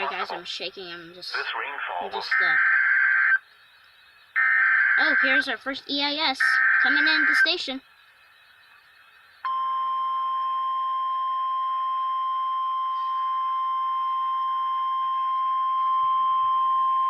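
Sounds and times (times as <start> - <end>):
high-pitched alarm tone: 2.3 - 3.4, 4.4 - 5.6, 6.2 - 7.7.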